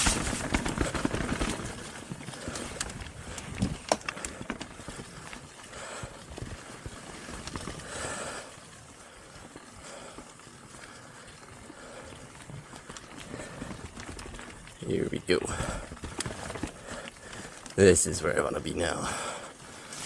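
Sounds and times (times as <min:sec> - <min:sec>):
bike knocking and rattling: 0:00.0 - 0:20.0
bike tyres on dirt trail: 0:00.0 - 0:20.0.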